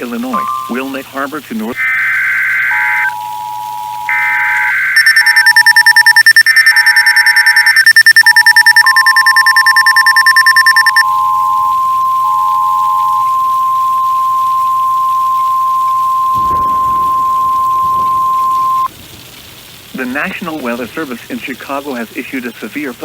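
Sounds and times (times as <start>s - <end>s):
fast high-pitched pulsing beep: 0.0s - 1.0s, 1.8s - 18.9s
on-off beeping tone: 0.0s - 1.0s, 1.8s - 18.9s
buzzy digital data bursts: 0.0s - 18.9s
steady warning alert tone: 0.0s - 18.9s.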